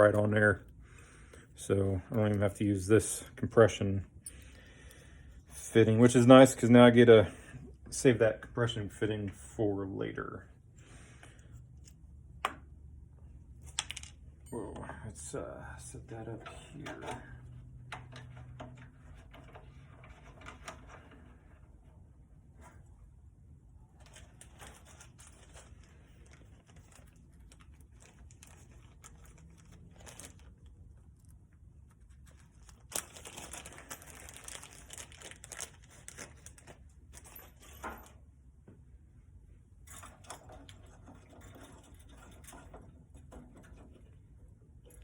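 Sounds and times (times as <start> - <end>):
rustling: 23.9 - 37.8.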